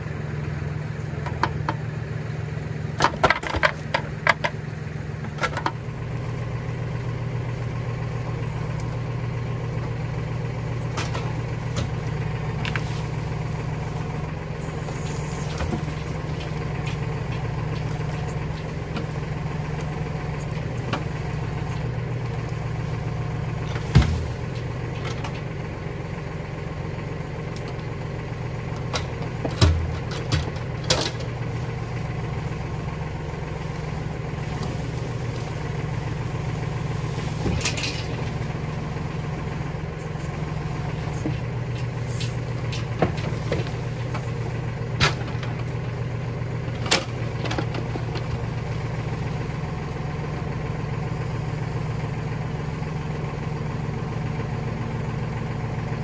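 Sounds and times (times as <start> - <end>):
engine idling: 0.0 - 56.0
sharp knocks and clunks: 14.8 - 21.9, 23.6 - 25.5, 28.8 - 31.4, 41.1 - 45.8.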